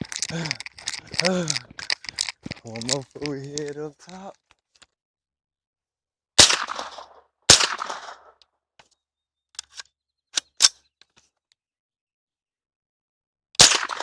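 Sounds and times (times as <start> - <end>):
sharp clicks: 0.0 - 4.3
rifle gunshots with echo: 6.4 - 8.3, 13.6 - 14.0.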